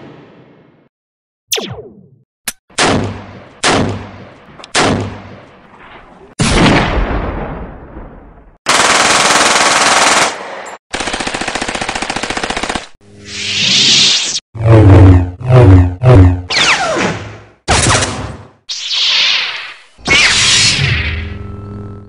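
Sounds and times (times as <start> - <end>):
machine-gun fire: 8.7 - 13.0.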